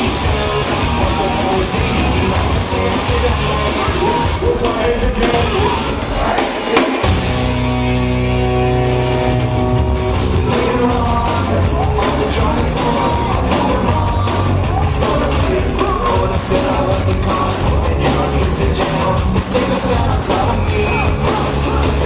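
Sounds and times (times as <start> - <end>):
person singing: 0.0 - 7.2, 10.3 - 22.0
loud live rock music: 0.0 - 22.0.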